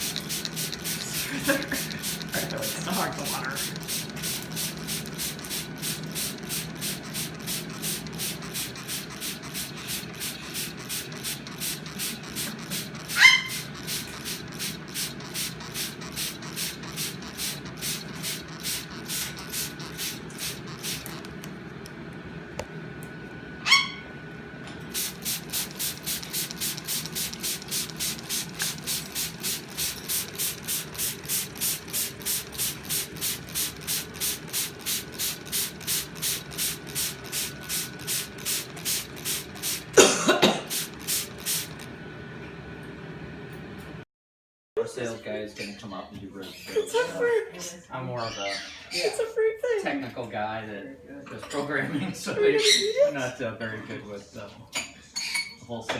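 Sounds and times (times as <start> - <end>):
shower water spraying: 0.0 - 21.4, 24.9 - 41.9
cockatoo screeching: 12.9 - 14.0, 23.6 - 24.1.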